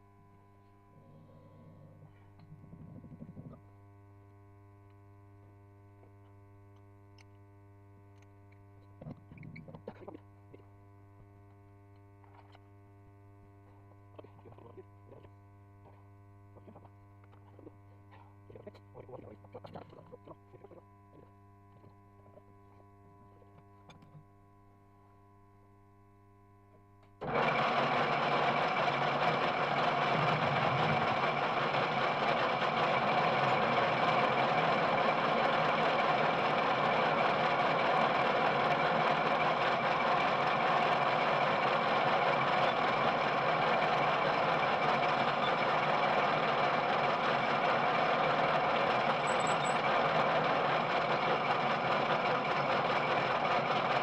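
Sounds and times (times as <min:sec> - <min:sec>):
faint electrical hum: 0:00.0 - 0:27.2
metal lathe running: 0:27.2 - 0:54.0.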